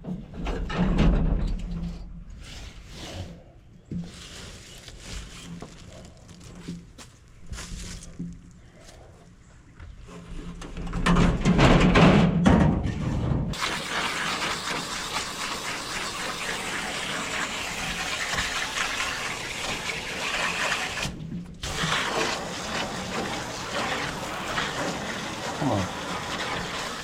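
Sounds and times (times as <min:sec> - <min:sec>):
hose water spraying on coil: 0:13.6 - 0:27.0.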